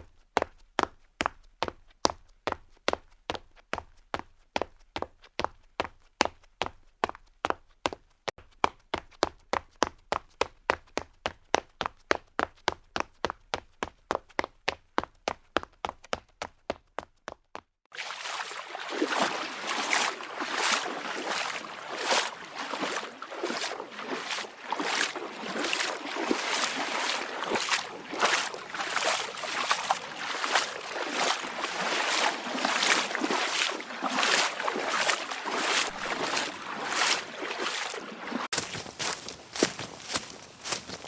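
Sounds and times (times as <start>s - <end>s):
footsteps splashing through water: 17.9s - 41.0s.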